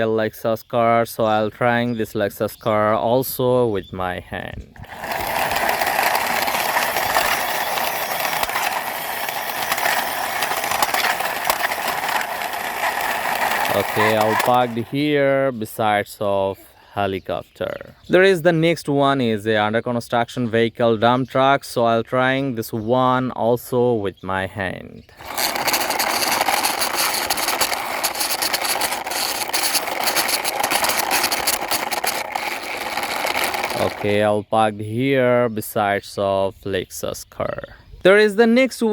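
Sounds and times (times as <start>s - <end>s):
toy car wheels ratcheting whir: 4.7s - 15.2s, 25.1s - 34.3s.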